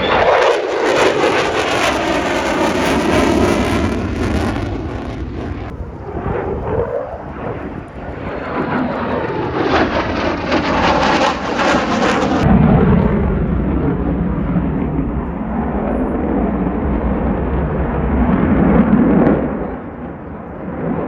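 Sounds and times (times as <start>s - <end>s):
jet engine rumble: 0.0s - 21.0s.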